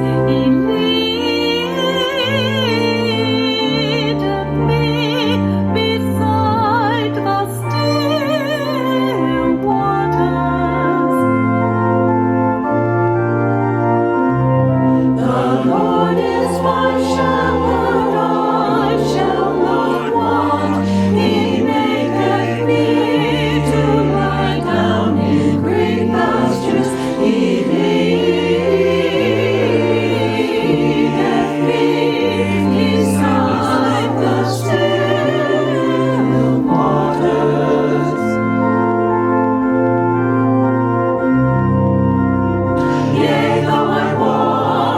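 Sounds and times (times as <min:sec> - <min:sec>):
organ playing a hymn: 0:00.0 - 0:44.9
voices singing: 0:15.0 - 0:38.9, 0:42.8 - 0:44.9.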